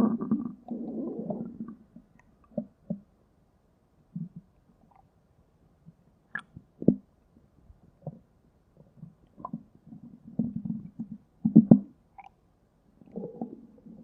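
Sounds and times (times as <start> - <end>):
stomach growling and gurgling: 0.0 - 3.1, 4.1 - 5.1, 8.0 - 12.4, 13.0 - 14.0.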